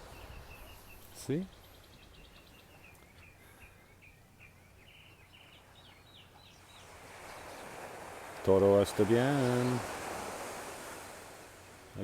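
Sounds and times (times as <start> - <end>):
soft surf: 5.6 - 12.0.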